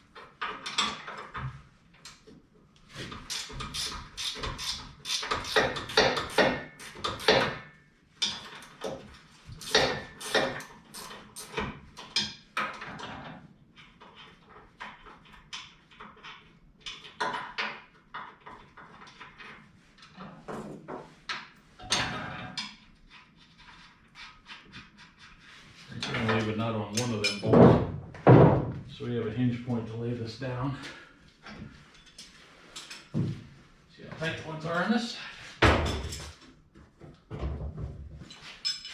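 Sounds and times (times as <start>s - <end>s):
metallic clinks of tools and bolts: 38.3s - 38.9s.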